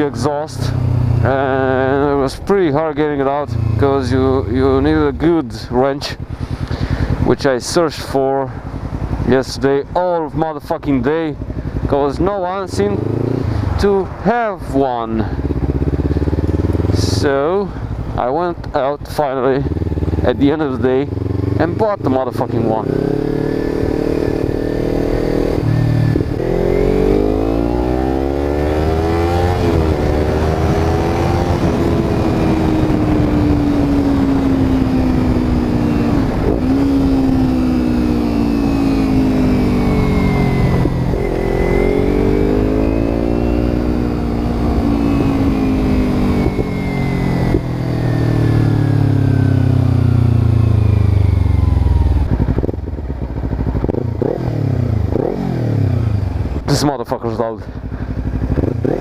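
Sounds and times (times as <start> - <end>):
motorcycle engine revving: 0.0 - 18.4, 19.2 - 59.0.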